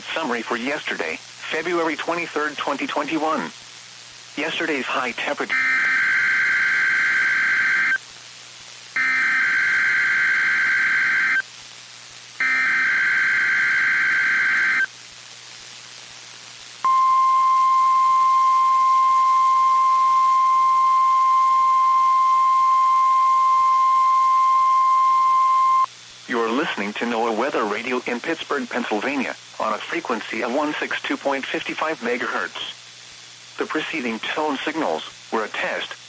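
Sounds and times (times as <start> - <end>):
steady weather radio alarm tone: 5.5 - 8.0, 9.0 - 11.4, 12.4 - 14.9, 16.8 - 25.9.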